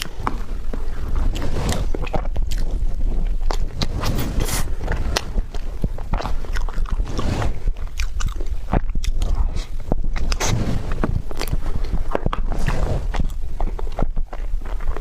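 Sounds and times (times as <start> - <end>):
chewing with mouth clicks: 0.0 - 10.6, 11.3 - 15.0
mouth clicks and smacks: 7.8 - 10.5, 11.1 - 15.0.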